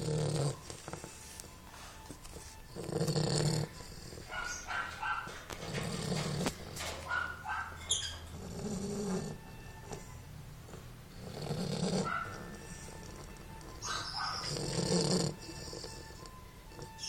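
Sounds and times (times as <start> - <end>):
deep snores: 0.0 - 1.0, 2.7 - 4.3, 8.3 - 9.5, 11.1 - 12.1, 14.4 - 17.0
high squeaky sounds: 7.1 - 8.3.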